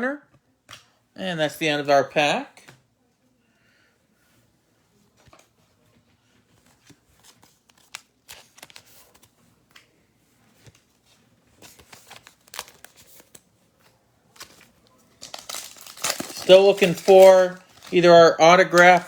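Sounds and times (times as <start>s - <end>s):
foil wrapper crinkling: 11.6s - 13.5s, 14.3s - 19.0s
trading cards sliding: 14.4s - 19.0s.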